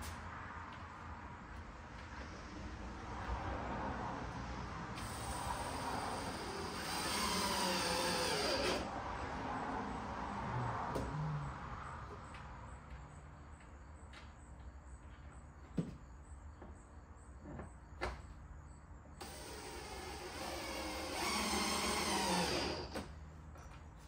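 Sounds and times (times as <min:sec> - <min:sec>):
power drill driving a screw: 0:05.0 - 0:08.9, 0:19.2 - 0:23.1.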